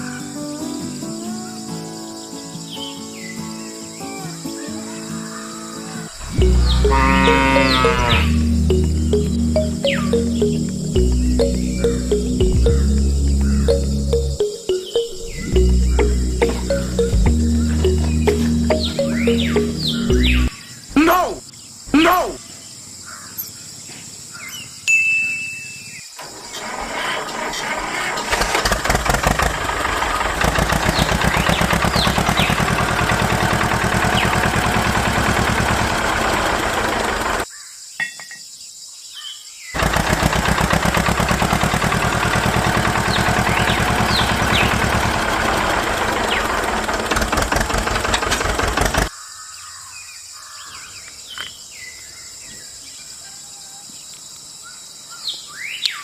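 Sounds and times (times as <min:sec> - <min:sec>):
small motor running: 0:39.8 - 0:49.1.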